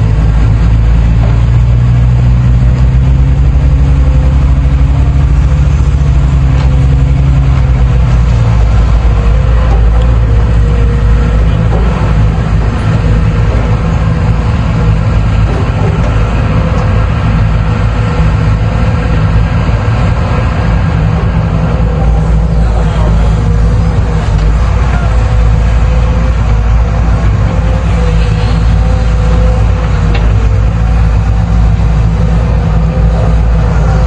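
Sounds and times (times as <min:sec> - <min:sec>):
excavator diesel engine running: 0:00.0 - 0:34.0.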